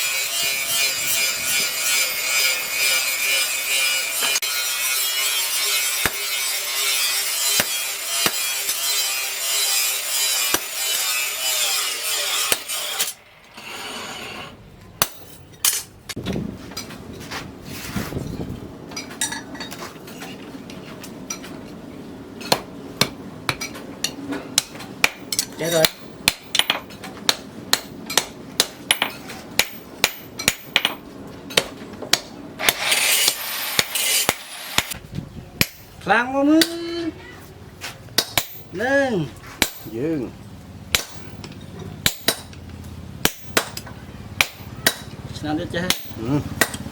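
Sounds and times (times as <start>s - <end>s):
hammer striking steel on anvil: 0.0s - 13.2s, 15.0s - 15.9s, 22.5s - 35.0s, 35.6s - 36.0s, 38.2s - 38.8s, 39.6s - 40.0s, 40.9s - 42.6s, 43.2s - 45.2s, 45.8s - 46.8s
tool rasping on steel: 0.0s - 14.6s, 32.6s - 35.0s.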